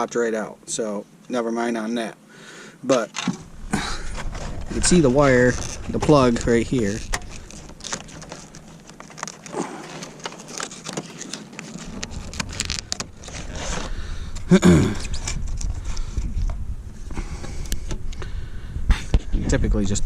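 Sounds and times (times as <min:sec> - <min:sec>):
low rumble: 0:03.4 - 0:08.6.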